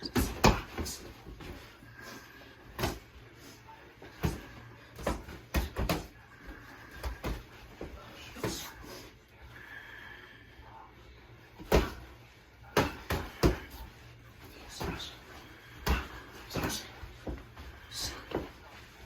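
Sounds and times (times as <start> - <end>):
gloved punches thudding: 0.0 - 0.9, 11.6 - 12.0, 12.8 - 13.8.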